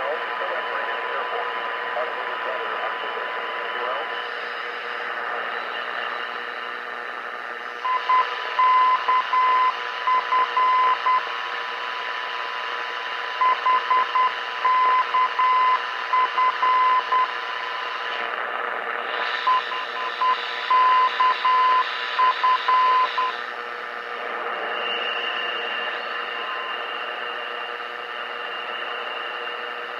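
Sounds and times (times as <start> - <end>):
radio band noise hiss: 0.0 - 29.9
morse code tone: 19.4 - 23.4.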